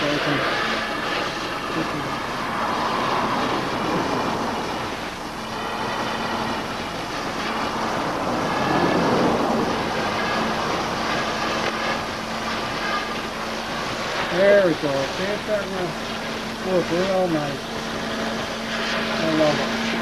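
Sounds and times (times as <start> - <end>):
welding torch flame hissing: 0.0 - 20.0.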